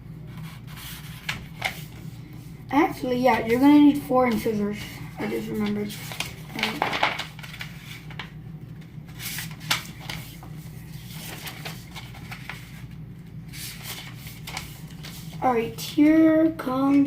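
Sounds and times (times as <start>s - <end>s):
steady low hum: 0.0s - 17.0s
paper rustling and tapping: 5.3s - 15.4s.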